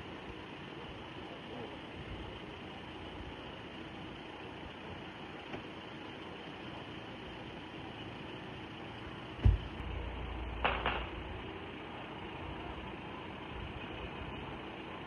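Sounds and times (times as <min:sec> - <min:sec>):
deep rumbling explosion boom: 0:09.4 - 0:11.4.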